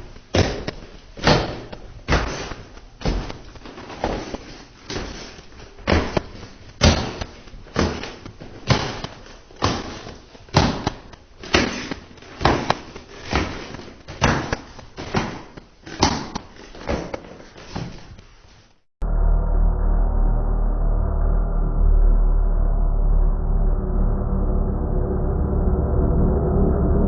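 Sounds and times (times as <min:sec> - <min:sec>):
heavy footsteps on stairs: 0:00.0 - 0:18.4.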